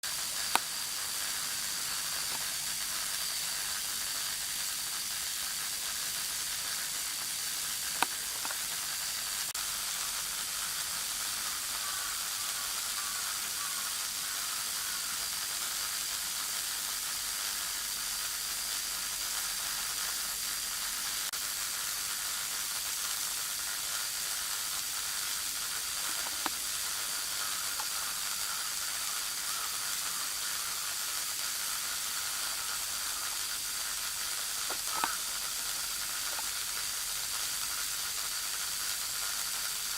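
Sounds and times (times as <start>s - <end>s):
sharp electrical clicks: 0.0s - 10.9s, 22.7s - 39.9s
electrical sizzling hiss: 0.0s - 39.9s.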